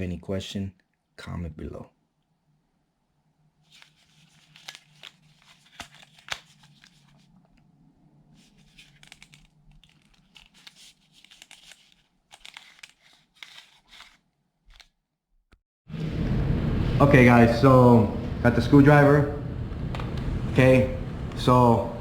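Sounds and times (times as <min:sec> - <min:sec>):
rustling and crinkling handling: 0:03.6 - 0:07.7, 0:08.3 - 0:15.0
faint low hum: 0:15.9 - 0:22.0.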